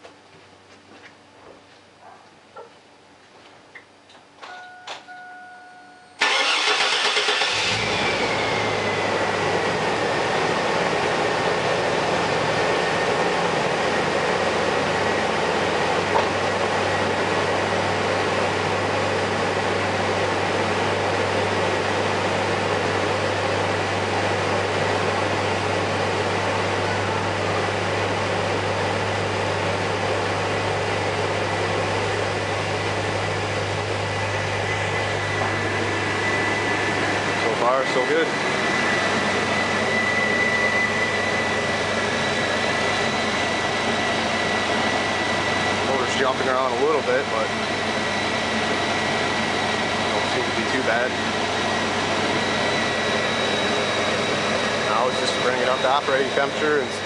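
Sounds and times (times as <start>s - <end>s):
short tone: 4.4s - 6.2s
car engine starting and idling: 4.5s - 57.0s.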